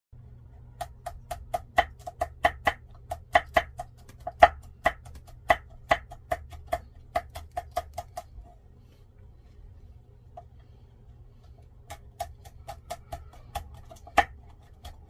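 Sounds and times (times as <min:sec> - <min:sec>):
knife chopping on cutting board: 0:00.7 - 0:08.4, 0:11.8 - 0:15.0.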